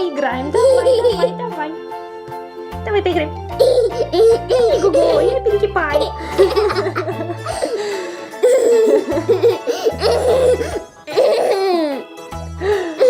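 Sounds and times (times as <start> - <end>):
background music with bass: 0.1 - 13.0
girl laughing and giggling: 0.5 - 1.4, 3.6 - 12.0.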